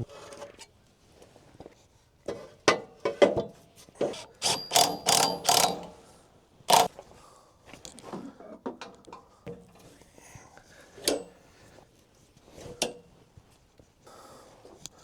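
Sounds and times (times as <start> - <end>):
mechanical clicks and clanks: 4.4 - 5.9, 6.7 - 6.9.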